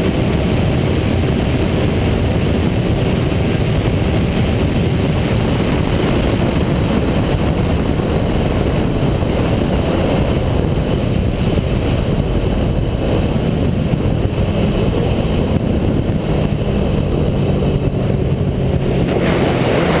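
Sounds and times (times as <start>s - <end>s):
motorcycle engine running: 0.0s - 20.0s.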